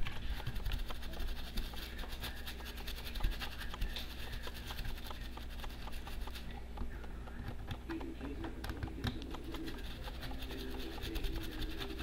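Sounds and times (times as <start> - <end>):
brush scrubbing circuit board: 0.0 - 6.8, 9.2 - 12.0.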